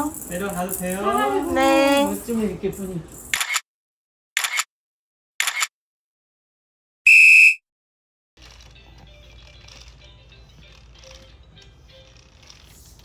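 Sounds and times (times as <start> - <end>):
camera shutter clicks: 3.3 - 3.6, 4.4 - 4.7, 5.4 - 5.7
faint background music: 8.4 - 13.0.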